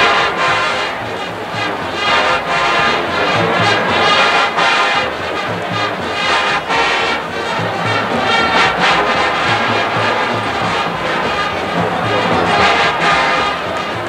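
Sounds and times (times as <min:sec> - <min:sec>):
brass band playing swing tune: 0:00.0 - 0:14.0.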